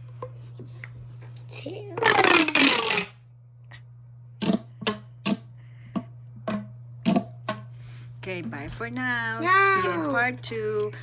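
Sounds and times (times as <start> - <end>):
fidget toy sliding buzz: 2.0 - 3.1.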